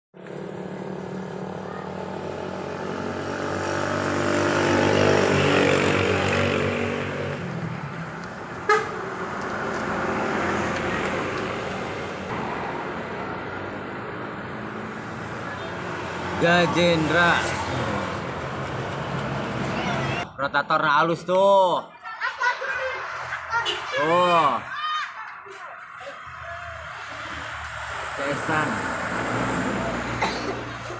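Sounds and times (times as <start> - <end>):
vehicle and road noise: 0.2 - 30.9
multi-trumpet air horn: 8.7 - 9.0
short sharp horn toot: 8.7 - 9.0.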